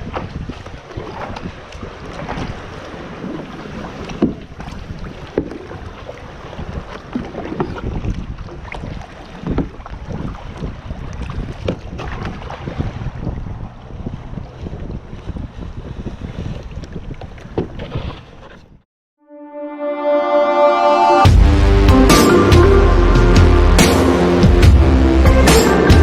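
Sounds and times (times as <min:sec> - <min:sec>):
kayak paddle splashing: 0:00.0 - 0:18.7
wind rumble on microphone: 0:00.0 - 0:18.8.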